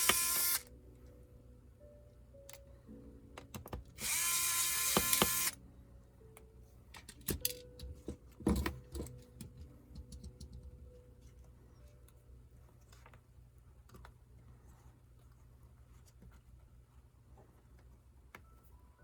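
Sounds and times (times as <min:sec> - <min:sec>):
electric screwdriver whine: 0:00.0 - 0:00.7, 0:04.0 - 0:05.6.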